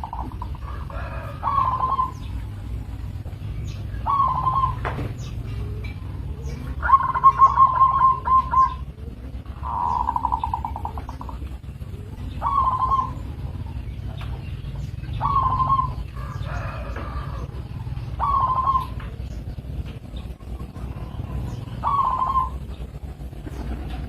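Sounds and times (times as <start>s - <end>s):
dove cooing: 0.0s - 24.0s.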